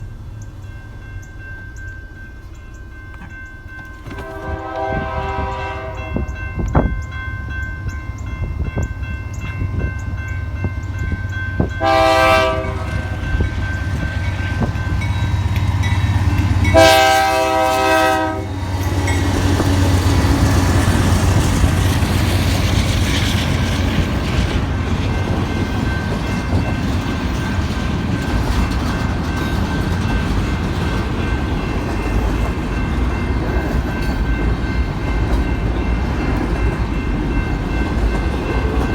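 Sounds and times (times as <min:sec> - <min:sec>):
train rumbling on rails: 0:00.0 - 0:38.9
locomotive horn blasts: 0:04.0 - 0:06.9, 0:11.6 - 0:13.5, 0:16.6 - 0:20.0.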